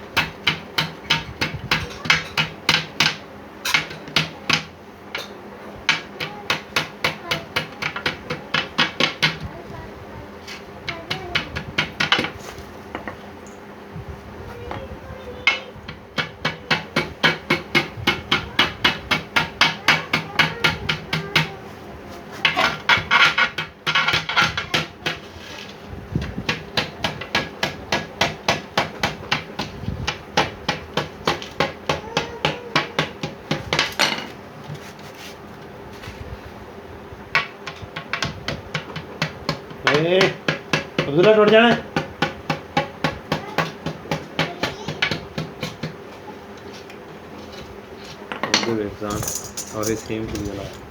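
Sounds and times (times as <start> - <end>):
hammer striking wood: 0.2 - 4.7, 16.2 - 21.5, 26.4 - 34.3, 37.4 - 46.0.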